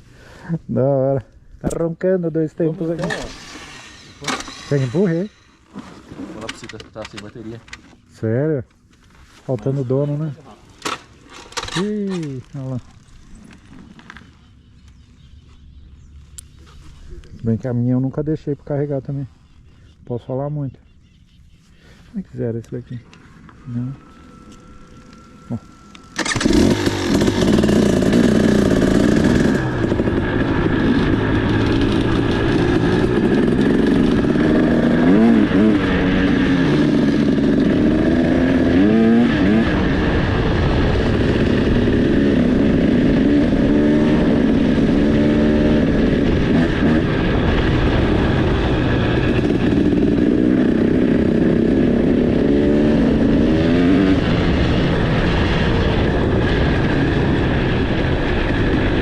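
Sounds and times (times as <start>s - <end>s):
two-stroke dirt bike engine revving: 2.8s - 6.5s, 23.6s - 59.0s.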